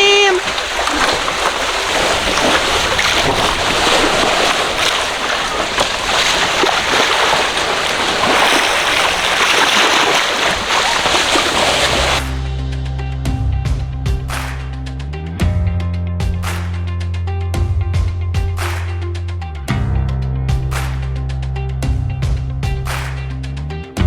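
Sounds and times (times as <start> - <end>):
water splashing along hull: 0.0 - 12.4
background music: 12.2 - 24.0.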